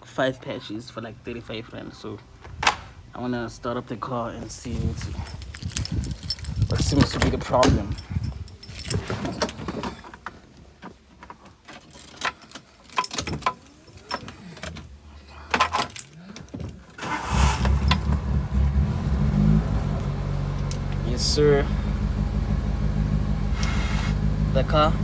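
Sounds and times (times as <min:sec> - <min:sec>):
car engine starting and idling: 0:17.0 - 0:25.0.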